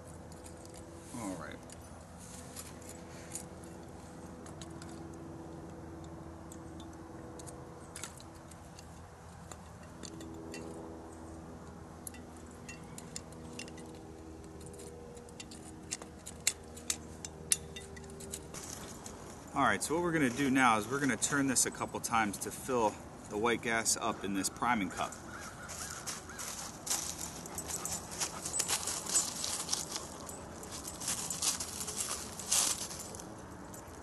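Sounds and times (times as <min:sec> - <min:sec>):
metallic clicks and clinks: 0:12.0 - 0:19.2.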